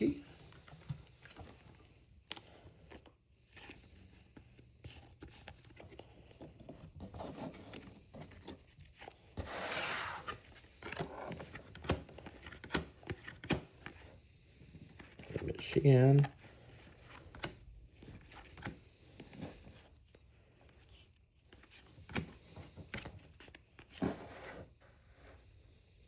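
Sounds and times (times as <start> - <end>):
cards scraping rustle: 0.0 - 25.4
cards tapping and clicking: 10.3 - 14.1, 14.9 - 19.8.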